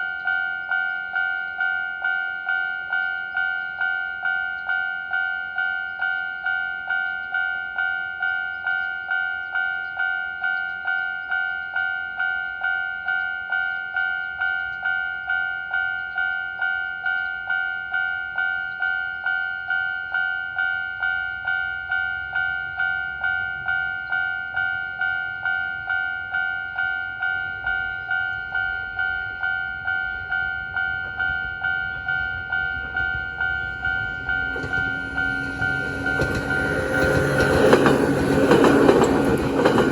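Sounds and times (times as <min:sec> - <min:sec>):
approaching train rumble: 0:26.6 - 0:39.9
level crossing alarm dinging: 0:27.4 - 0:39.9.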